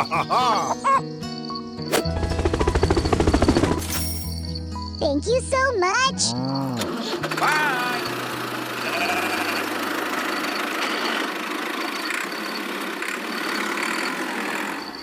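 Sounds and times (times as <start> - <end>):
engine running with rattle: 6.7 - 15.0.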